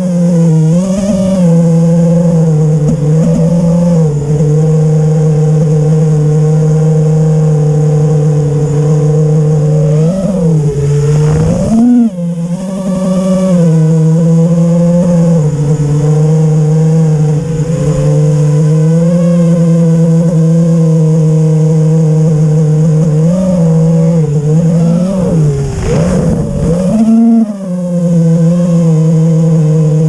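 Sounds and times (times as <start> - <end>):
drone motors whining: 0.0 - 30.0.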